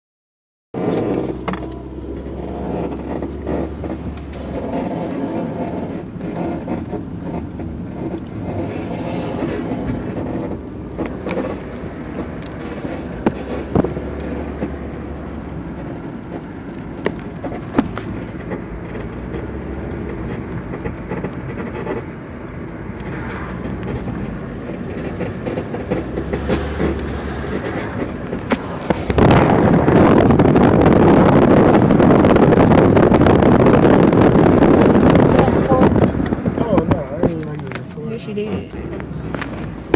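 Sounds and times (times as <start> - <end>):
car rumbling: 0.8 - 39.9
loud rushing noise: 21.1 - 37.8.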